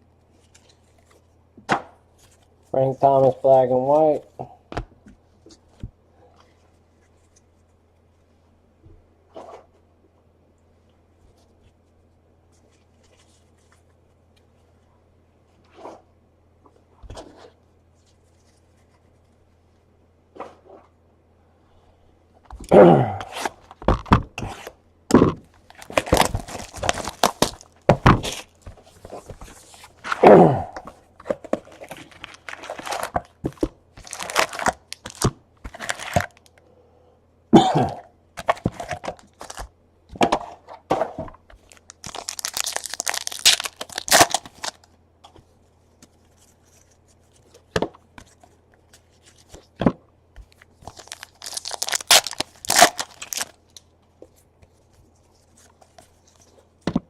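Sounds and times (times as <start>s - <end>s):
foil wrappers crinkling and tearing: 25.6s - 30.2s, 31.2s - 36.6s, 38.4s - 39.7s, 41.6s - 44.9s, 50.5s - 53.9s.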